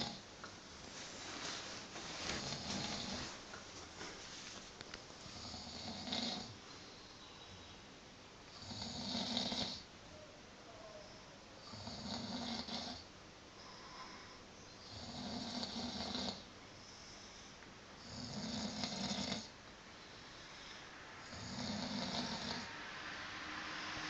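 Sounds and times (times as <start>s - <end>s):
man snoring: 2.4s - 3.2s, 5.3s - 6.5s, 8.6s - 9.8s, 11.6s - 13.0s, 14.9s - 16.5s, 18.0s - 19.5s, 21.2s - 22.7s.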